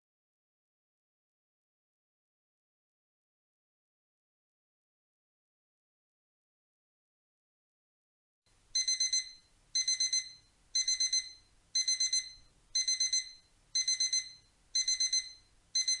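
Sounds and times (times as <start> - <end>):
alarm clock beeping: 8.8 - 16.0.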